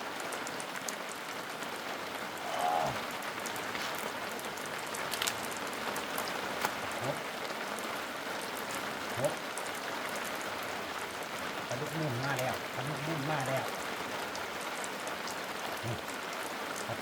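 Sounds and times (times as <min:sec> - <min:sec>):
heavy rain: 0:00.0 - 0:17.0
raindrops tapping: 0:00.0 - 0:17.0
voice-like call: 0:02.4 - 0:03.1.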